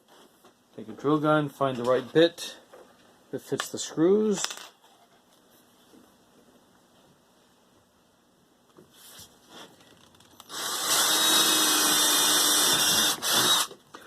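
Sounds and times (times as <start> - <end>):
power drill motor running: 10.5 - 13.7.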